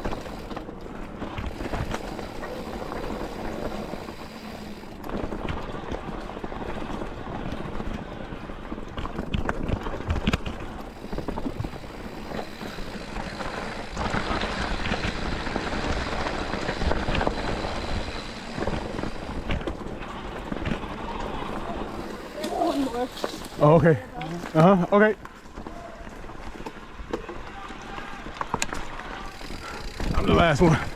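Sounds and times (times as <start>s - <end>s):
bike knocking and rattling: 0.0s - 30.9s
bike tyres rolling over rocks: 0.0s - 30.9s
wind buffeting microphone: 29.3s - 30.9s.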